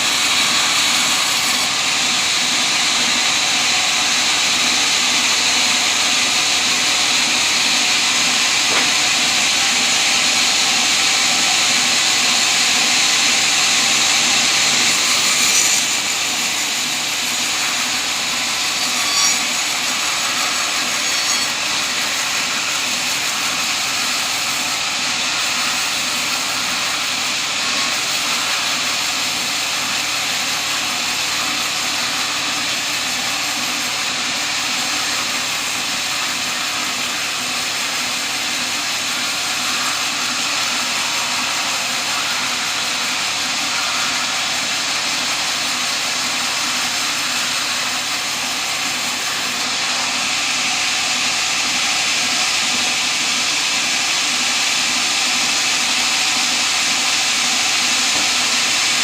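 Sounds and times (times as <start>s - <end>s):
sawmill rushing noise: 0.0s - 59.0s.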